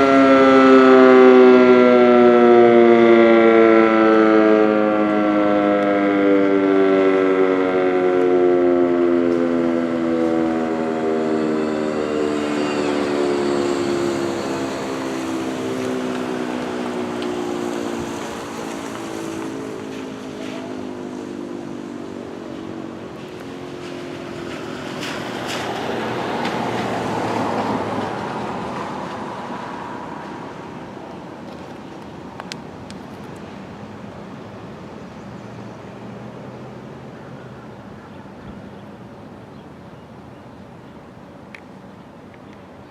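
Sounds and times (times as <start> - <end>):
mechanical siren winding down: 0.0 - 29.2
vehicle passing by: 4.4 - 31.6.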